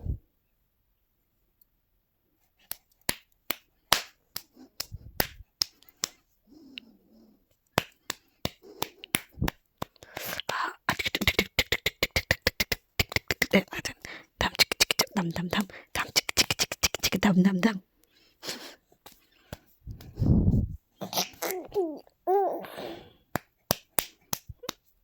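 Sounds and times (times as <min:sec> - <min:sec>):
sharp smacks and pats: 0:02.6 - 0:06.3, 0:07.6 - 0:11.4, 0:19.0 - 0:21.5, 0:23.3 - 0:25.0.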